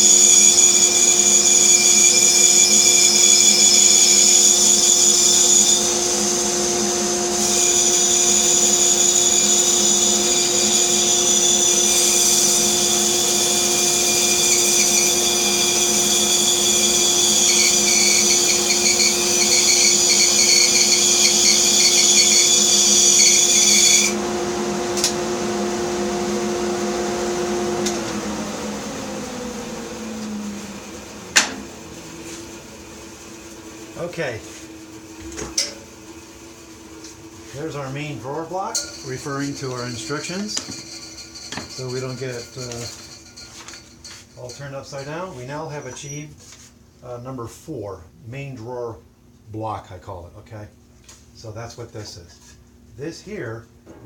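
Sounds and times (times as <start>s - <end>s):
bandsaw cutting wood: 0.0s - 32.4s, 37.6s - 43.3s
bandsaw motor coasting down: 0.0s - 34.4s, 37.1s - 45.0s.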